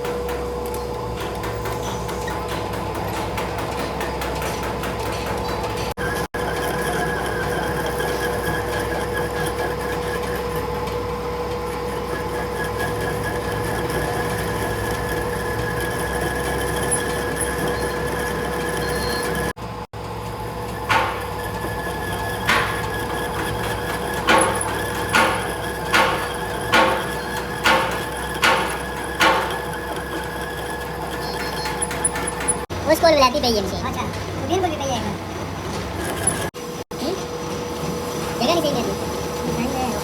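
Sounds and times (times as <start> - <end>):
workshop machinery running: 0.0 - 40.0
sharp knock: 20.9 - 21.4, 22.5 - 29.7.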